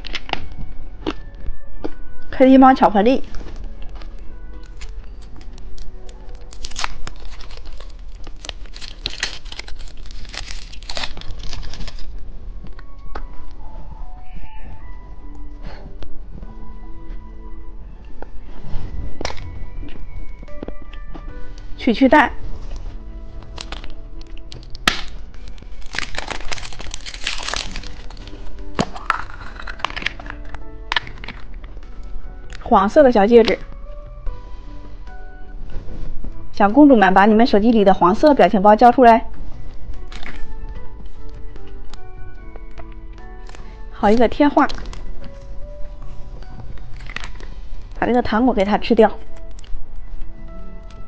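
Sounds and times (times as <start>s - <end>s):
hard plastic cracking and clicking: 0.0s - 1.4s, 3.8s - 13.3s, 23.4s - 31.8s, 40.0s - 43.7s, 44.6s - 45.5s, 46.7s - 47.5s, 49.2s - 49.8s
light background music: 0.0s - 51.0s
candy wrapper crinkling and tearing: 3.6s - 13.1s, 23.4s - 32.6s, 39.9s - 48.0s.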